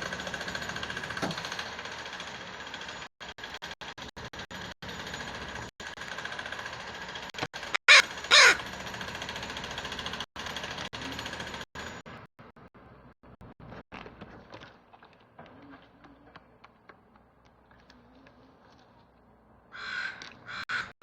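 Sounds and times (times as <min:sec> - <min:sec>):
crow cawing: 0:07.7 - 0:08.6, 0:19.7 - 0:21.0.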